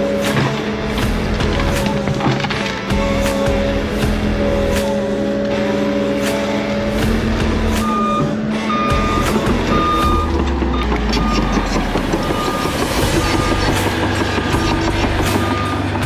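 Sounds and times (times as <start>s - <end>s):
diesel engine rumble: 0.0s - 16.0s
reversing alarm beeping: 7.6s - 16.0s.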